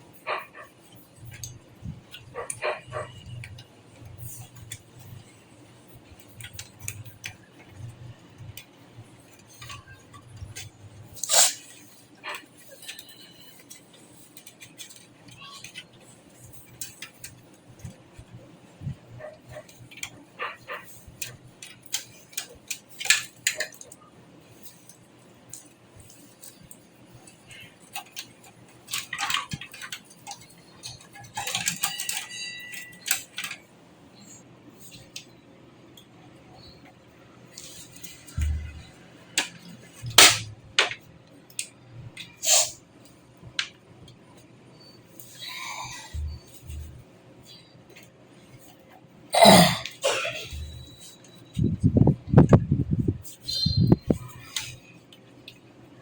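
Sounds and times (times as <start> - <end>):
computer hardware clicking and clinking: 24.6 - 33.6.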